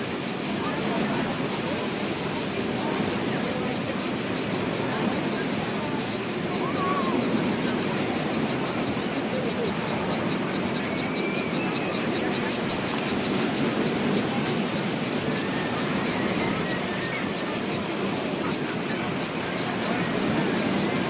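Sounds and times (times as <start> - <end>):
beach ambience: 0.0 - 21.0
insects chirring: 0.0 - 21.0.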